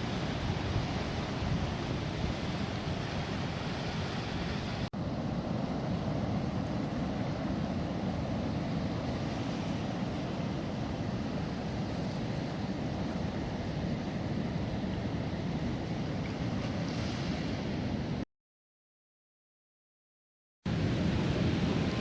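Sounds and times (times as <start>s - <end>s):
wind buffeting microphone: 0.0s - 4.9s
rushing wind: 0.0s - 18.2s, 20.7s - 22.0s.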